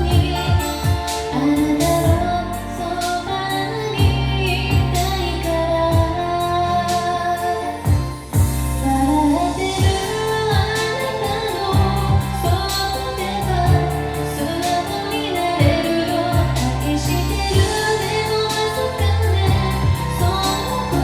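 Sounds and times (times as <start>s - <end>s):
backing track with steady beat: 0.0s - 21.0s
woman singing pop ballad: 0.0s - 21.0s.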